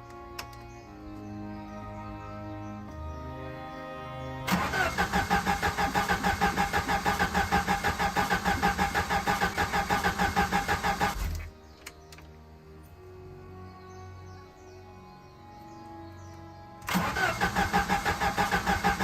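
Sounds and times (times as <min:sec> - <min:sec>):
clicks: 0:00.1 - 0:00.7
engine starter cranking: 0:04.5 - 0:11.5, 0:16.8 - 0:19.0.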